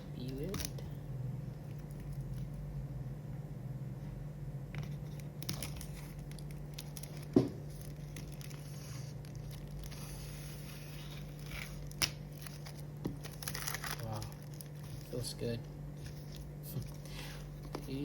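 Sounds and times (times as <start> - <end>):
wrapping crinkling and tearing: 5.1 - 17.1.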